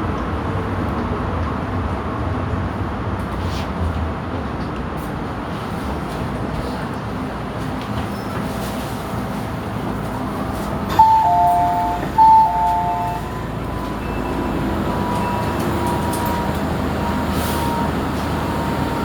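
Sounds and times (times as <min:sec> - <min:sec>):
train hum: 0:00.0 - 0:19.0
two-note electronic chime: 0:10.9 - 0:13.5.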